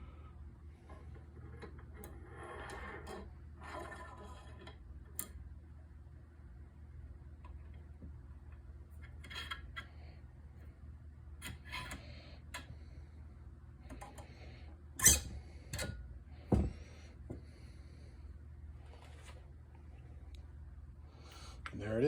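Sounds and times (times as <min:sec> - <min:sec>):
faint low hum: 0:00.0 - 0:22.0.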